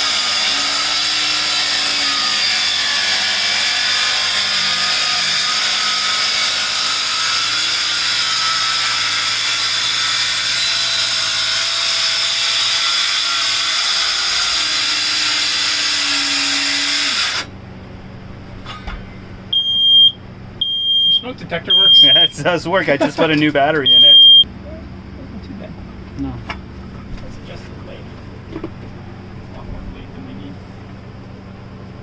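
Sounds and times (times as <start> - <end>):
power saw cutting wood: 0.0 - 17.5.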